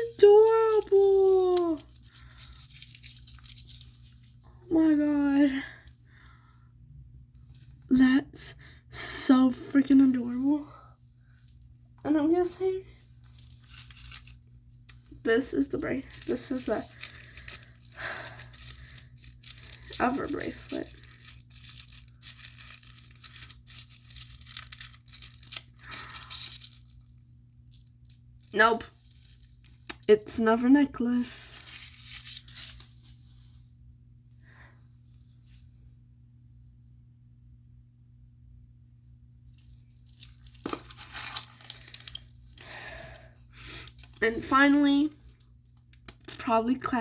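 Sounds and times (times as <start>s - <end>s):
plastic wrapper tearing and crinkling: 0.0s - 4.3s, 13.2s - 27.2s, 28.5s - 30.1s, 31.4s - 33.2s, 39.6s - 42.8s
faint low hum: 0.0s - 47.0s.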